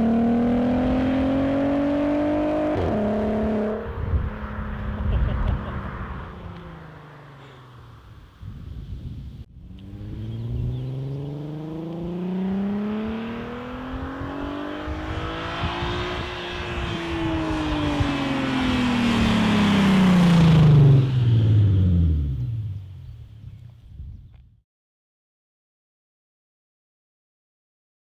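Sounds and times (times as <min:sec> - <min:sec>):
car accelerating past: 0:00.0 - 0:08.4, 0:09.6 - 0:23.4.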